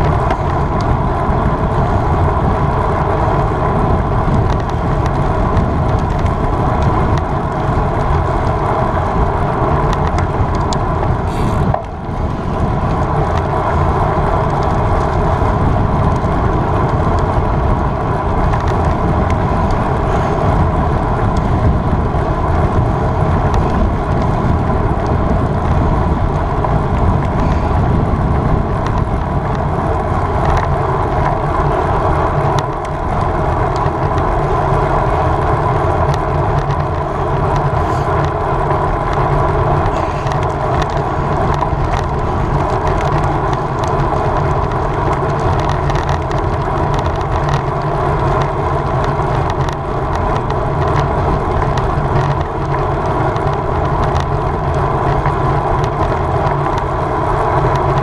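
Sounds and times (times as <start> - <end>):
wind rushing over microphone: 0.0 - 58.0.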